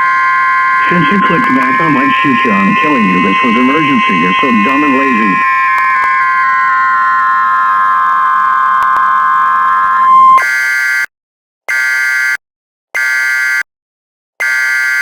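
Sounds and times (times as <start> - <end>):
buzzing digital data bursts: 0.0 - 10.5
steady alarm tone: 0.0 - 11.1.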